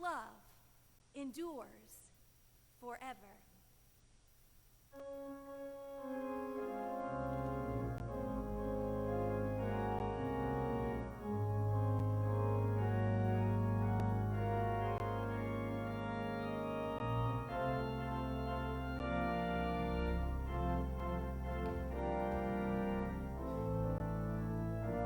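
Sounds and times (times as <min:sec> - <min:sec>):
church organ playing chords: 0:05.0 - 0:25.0.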